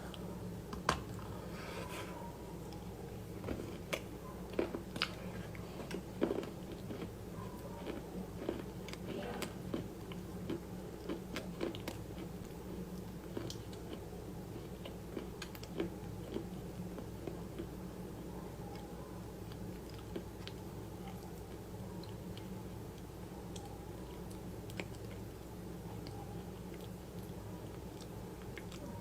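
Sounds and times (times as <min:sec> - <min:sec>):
steady low hum: 0:00.0 - 0:29.0
crunchy food chewing: 0:02.2 - 0:29.0.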